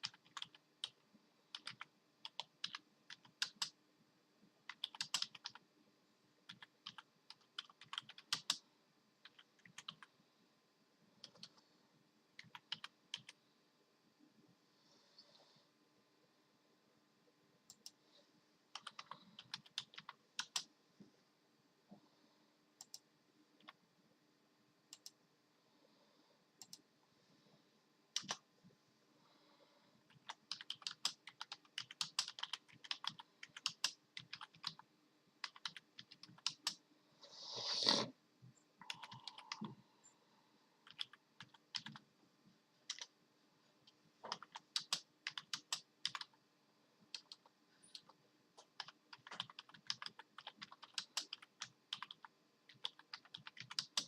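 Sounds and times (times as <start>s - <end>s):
computer keyboard clicking: 0.0s - 3.8s, 4.7s - 5.6s, 6.5s - 8.6s, 9.2s - 10.1s, 11.2s - 11.6s, 12.4s - 13.4s, 18.7s - 20.7s, 28.2s - 28.4s, 30.1s - 34.8s, 35.4s - 36.8s, 38.8s - 39.8s, 40.8s - 42.0s, 42.9s - 43.1s, 44.3s - 46.4s, 47.1s - 54.0s.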